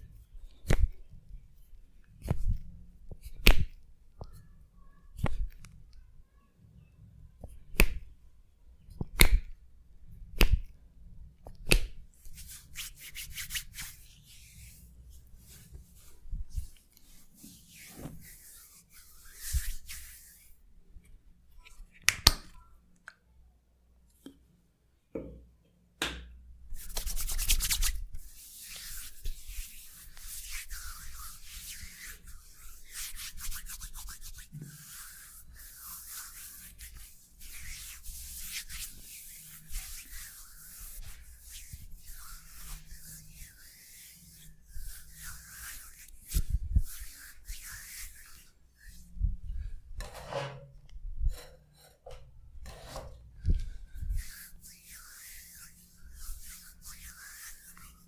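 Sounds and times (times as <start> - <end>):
hands smacking skin: 3.3 - 3.8, 7.7 - 8.0, 11.6 - 12.0
hands rubbing skin: 11.6 - 20.6, 26.7 - 49.4, 53.5 - 58.0.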